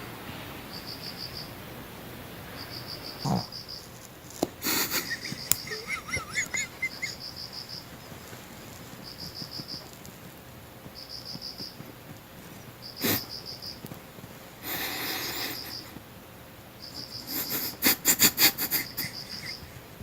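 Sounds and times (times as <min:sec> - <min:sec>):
cricket chirping: 0:00.7 - 0:01.8, 0:02.5 - 0:13.9, 0:14.6 - 0:16.0, 0:16.7 - 0:20.0
dog snoring: 0:03.0 - 0:03.8.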